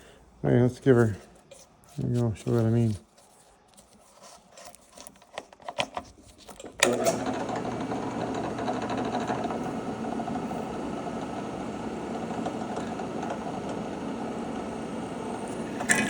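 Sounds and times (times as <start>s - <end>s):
drill press drilling: 6.8s - 16.0s.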